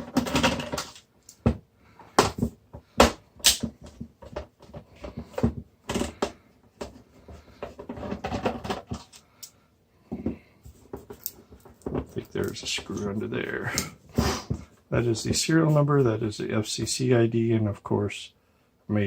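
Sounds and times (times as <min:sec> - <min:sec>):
scraping and rustling: 0:03.8 - 0:09.2.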